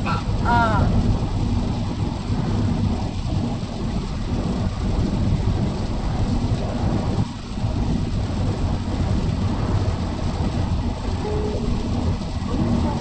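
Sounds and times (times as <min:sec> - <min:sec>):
car driving low rumble: 0:00.0 - 0:13.0
rain and wet road hiss: 0:00.0 - 0:13.0.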